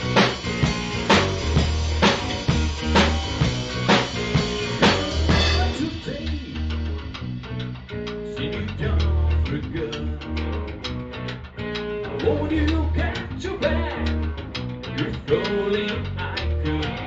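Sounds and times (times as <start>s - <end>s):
heavy drum hits: 0.0s - 6.7s
blues-rock band playing: 0.0s - 17.0s.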